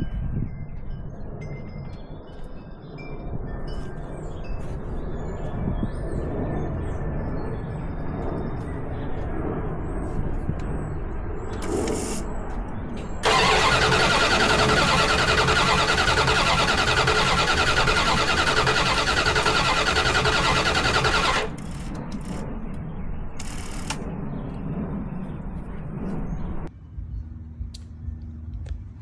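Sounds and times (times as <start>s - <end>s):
engine starter cranking: 13.0s - 21.9s.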